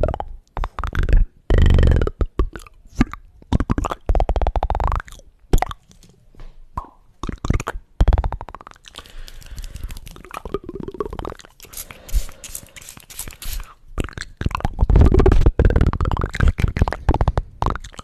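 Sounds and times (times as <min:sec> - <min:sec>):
wet mouth clicks and pops: 0:00.0 - 0:05.8, 0:06.8 - 0:11.8, 0:14.0 - 0:18.0
croaky gurgling voiced noises: 0:14.0 - 0:18.0.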